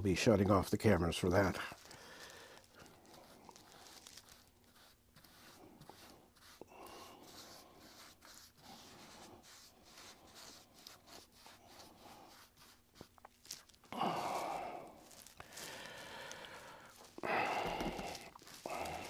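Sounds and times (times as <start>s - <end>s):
soft brush strokes: 0.1s - 19.0s
person sighing: 13.9s - 19.0s.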